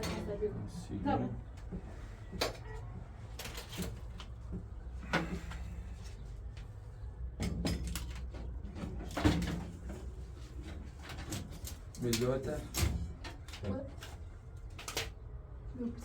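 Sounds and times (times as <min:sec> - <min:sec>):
sharp knocks and clatters: 0:07.3 - 0:10.1.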